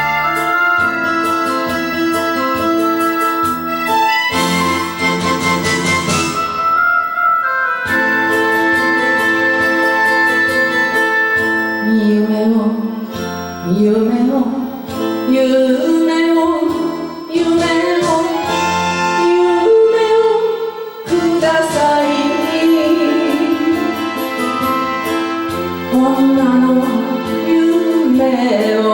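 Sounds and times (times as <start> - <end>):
instrumental karaoke backing track: 0.0 - 28.9.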